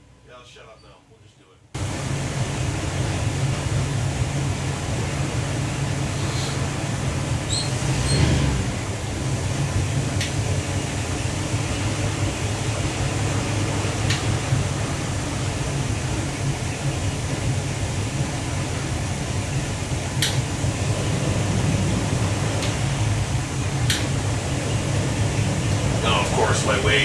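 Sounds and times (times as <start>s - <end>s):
boat engine droning: 1.8s - 27.0s
rushing hiss: 5.9s - 9.3s.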